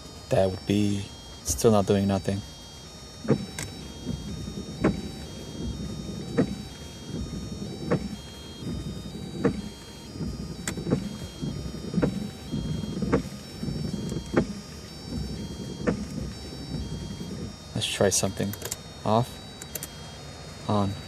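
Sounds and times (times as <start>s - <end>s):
wiper motor droning: 0.0s - 21.0s
wiper knocking: 3.2s - 17.7s.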